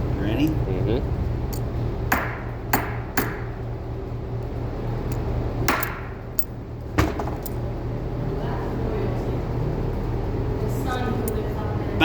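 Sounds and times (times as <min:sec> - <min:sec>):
hammer striking metal rivet: 0:02.1 - 0:03.5, 0:05.7 - 0:06.5.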